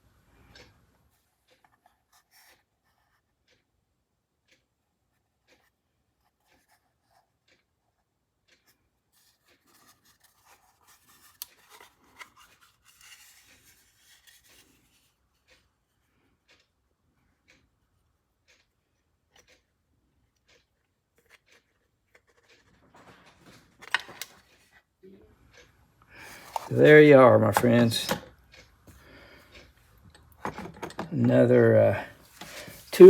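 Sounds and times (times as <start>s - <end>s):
faint handling noises: 5.4s - 16.6s, 20.3s - 33.0s.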